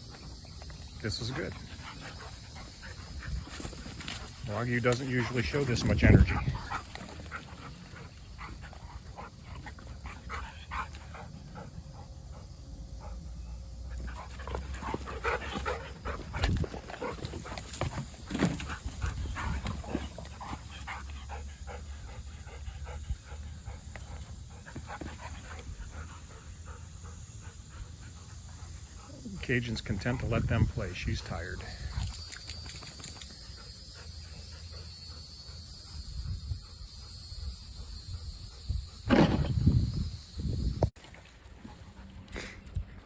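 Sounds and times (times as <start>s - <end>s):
dogs panting: 0.0s - 39.0s
dogs scuffling and knocking: 14.0s - 20.7s.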